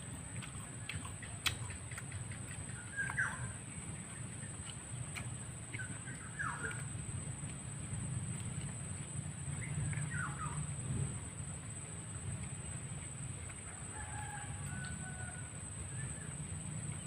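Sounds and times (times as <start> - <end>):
bird calling: 2.4 - 4.2, 5.7 - 6.9.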